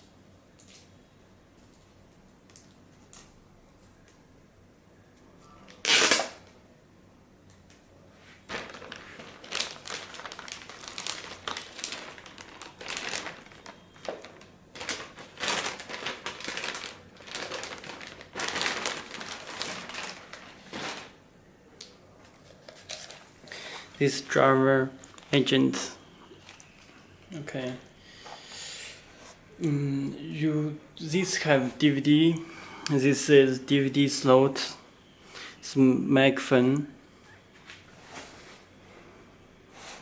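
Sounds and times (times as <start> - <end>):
packaging crinkling and rustling: 8.4 - 21.2, 22.2 - 27.9.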